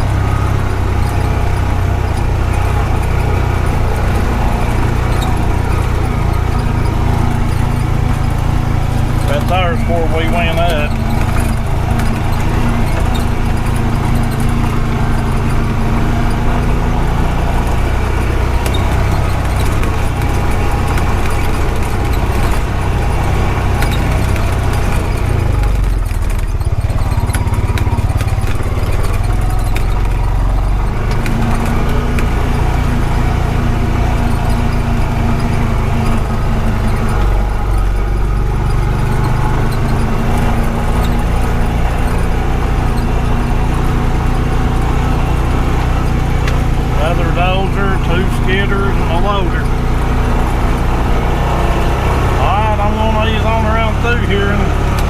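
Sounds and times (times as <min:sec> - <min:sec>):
single-cylinder engine running: 0:00.0 - 0:55.0
clicks and rattles: 0:16.3 - 0:32.8.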